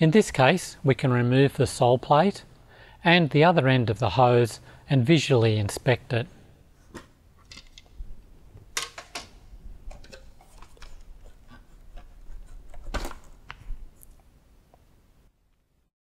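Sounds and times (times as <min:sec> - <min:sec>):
plastic parts clicking and knocking: 0:07.0 - 0:07.9, 0:08.8 - 0:11.0.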